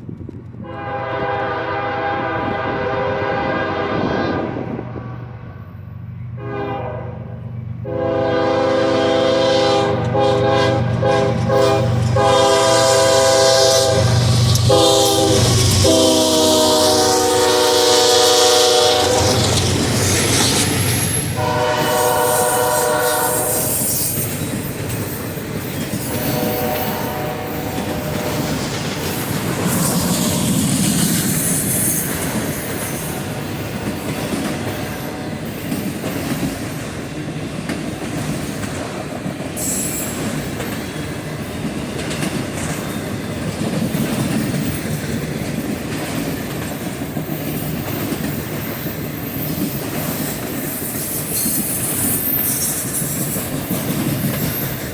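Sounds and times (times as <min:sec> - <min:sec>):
train wheels rumbling on rail: 0:00.0 - 0:54.9
locomotive air horn chord: 0:00.6 - 0:05.3, 0:06.4 - 0:19.5, 0:21.4 - 0:23.8, 0:26.1 - 0:28.5.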